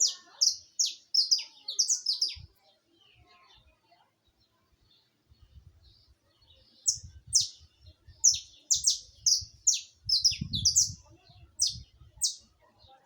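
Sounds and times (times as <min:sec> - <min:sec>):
finch singing: 0:00.0 - 0:02.6, 0:05.9 - 0:12.5.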